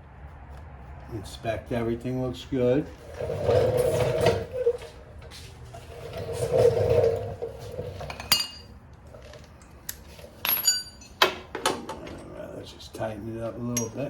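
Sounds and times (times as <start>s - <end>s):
metal tools shuffling and scraping: 3.0s - 12.4s
sharp metal clink: 10.4s - 11.3s.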